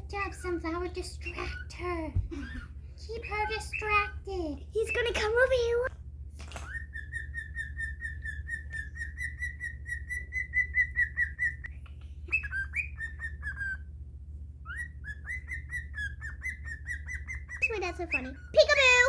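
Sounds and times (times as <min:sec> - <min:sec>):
steady low hum: 0:00.0 - 0:19.0
cockatiel whistling: 0:02.3 - 0:04.2, 0:04.8 - 0:05.3, 0:06.6 - 0:14.0, 0:14.6 - 0:19.0.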